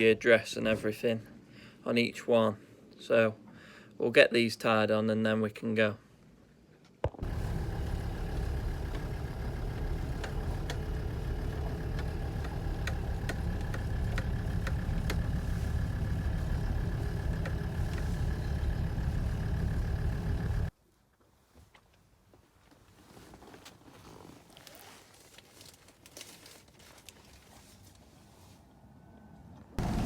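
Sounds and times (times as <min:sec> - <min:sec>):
vehicle engine running: 0:07.2 - 0:20.7, 0:29.8 - 0:30.0
light clicks: 0:08.8 - 0:15.3.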